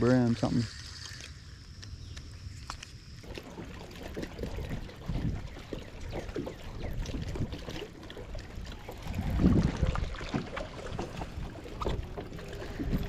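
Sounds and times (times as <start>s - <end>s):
water slapping against boat hull: 3.2s - 13.0s
low wind rumble: 8.2s - 13.0s.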